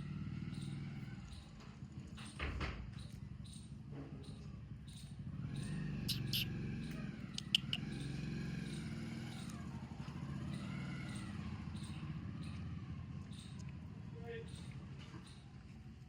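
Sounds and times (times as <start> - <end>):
dog whining: 6.1 - 6.5
sharp clicks: 6.1 - 6.5, 7.3 - 8.1.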